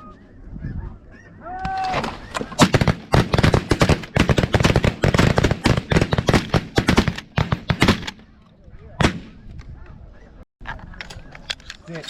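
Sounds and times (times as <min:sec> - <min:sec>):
shotguns firing rapidly: 0:01.9 - 0:08.2, 0:09.0 - 0:09.4.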